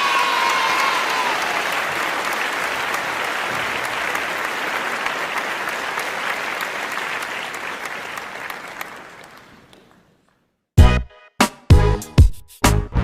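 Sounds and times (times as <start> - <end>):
crowd applause: 0.0 - 10.4.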